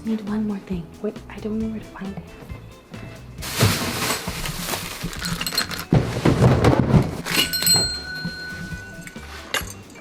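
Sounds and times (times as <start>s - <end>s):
plastic bricks clattering: 3.6s - 7.4s.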